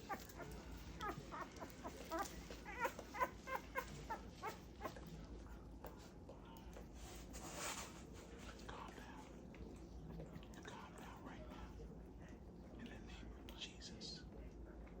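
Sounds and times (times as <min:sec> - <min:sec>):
puppy whimpering: 0:00.0 - 0:05.1.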